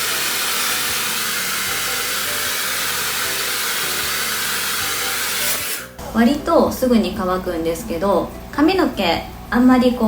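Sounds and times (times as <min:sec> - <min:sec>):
hair dryer blowing: 0:00.0 - 0:06.0.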